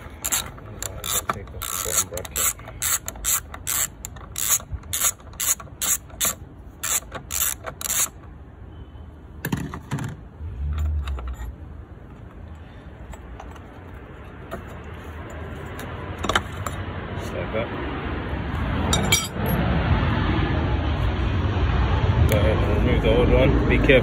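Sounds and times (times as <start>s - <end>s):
ratchet clicking: 0.0s - 8.3s.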